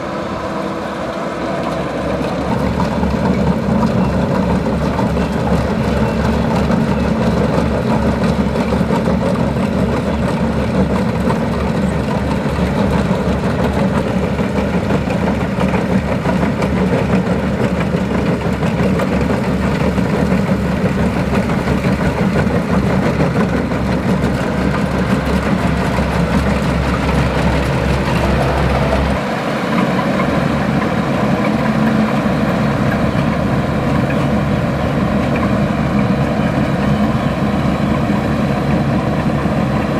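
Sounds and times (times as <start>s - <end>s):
diesel engine running: 0.0s - 39.9s
steady higher hum: 19.3s - 39.9s.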